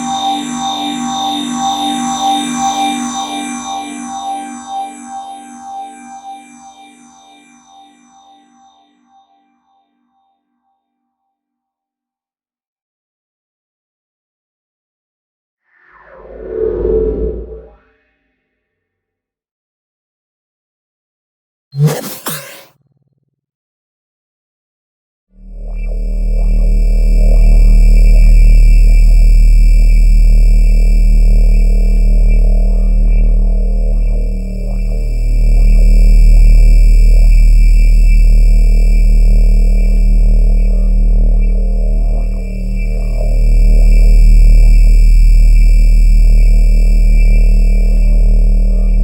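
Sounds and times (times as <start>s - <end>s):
electronic drone with ringing tones: 0.0s - 8.7s, 25.4s - 49.0s
faint pitch sweeps: 15.9s - 18.2s
deep synthesized hum: 25.4s - 49.0s.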